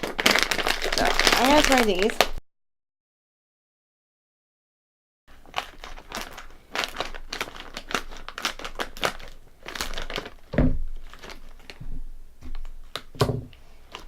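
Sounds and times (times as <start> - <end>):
chip bag crinkling: 0.0 - 2.4, 5.3 - 11.8, 12.5 - 14.0
thump: 10.6 - 10.9.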